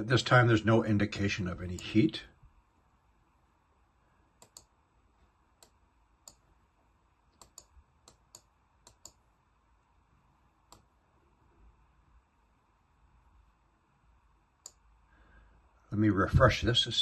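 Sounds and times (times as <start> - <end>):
computer mouse clicking: 4.4 - 4.8, 5.6 - 6.5, 7.3 - 9.2, 10.7 - 10.9, 14.6 - 14.8.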